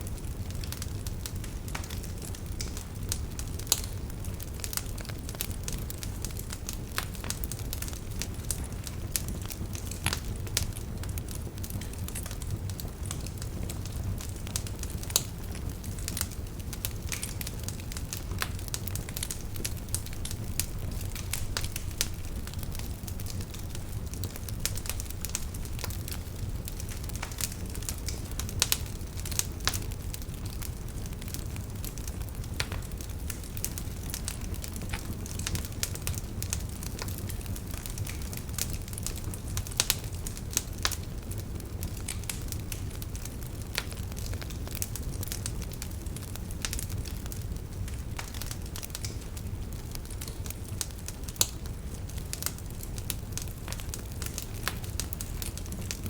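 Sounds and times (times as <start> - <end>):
fire crackling in fireplace: 0.0 - 56.0.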